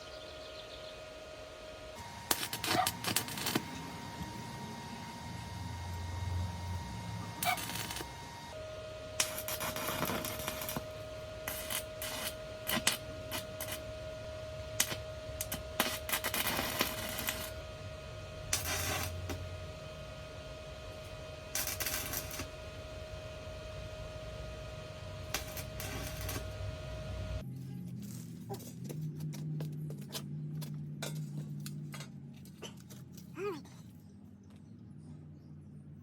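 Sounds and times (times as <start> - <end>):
faint steady whine: 0.0 - 28.2.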